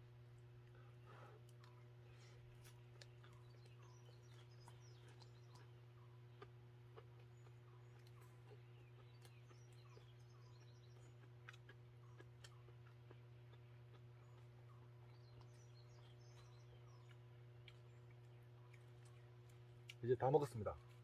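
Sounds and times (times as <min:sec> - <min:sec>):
small birds chirping: 0:00.0 - 0:21.0
steady low hum: 0:00.0 - 0:21.0.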